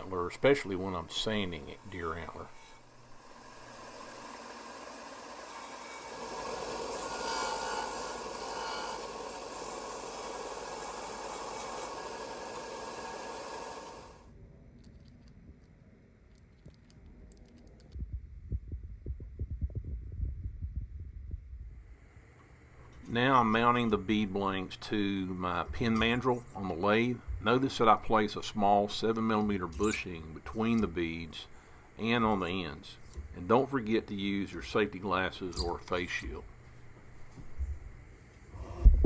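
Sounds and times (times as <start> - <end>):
antler sanding hiss: 0.0 - 14.3
soft low knocks: 18.0 - 21.7.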